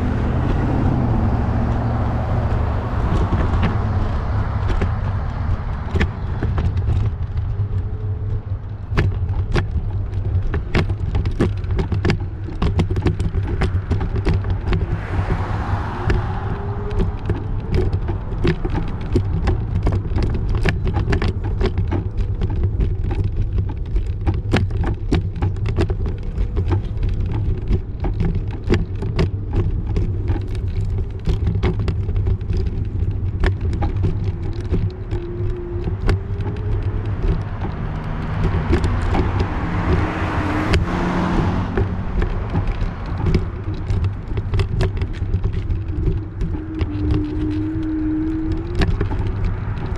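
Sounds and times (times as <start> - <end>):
vehicle passing: 0.0 - 8.9, 13.2 - 22.5, 26.2 - 49.9
bicycle road rumble: 0.0 - 49.9
sharp rattling clicks: 16.0 - 49.9.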